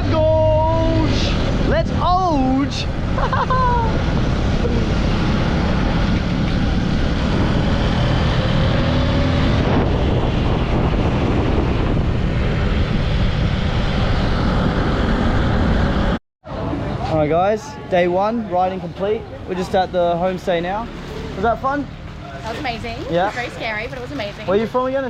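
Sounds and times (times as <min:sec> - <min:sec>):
wind rushing over microphone: 0:00.0 - 0:17.0.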